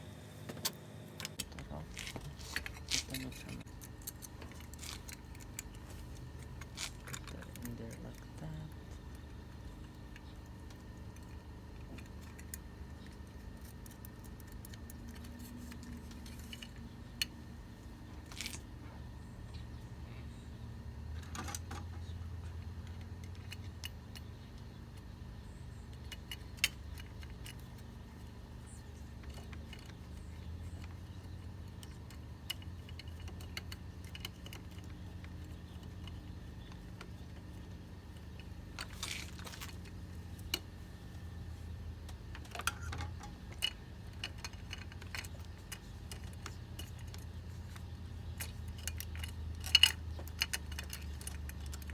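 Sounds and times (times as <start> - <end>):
low steady hum: 0.0 - 51.9
metal parts clicking and clinking: 1.2 - 17.4, 18.1 - 18.6, 21.2 - 25.0, 25.7 - 51.9.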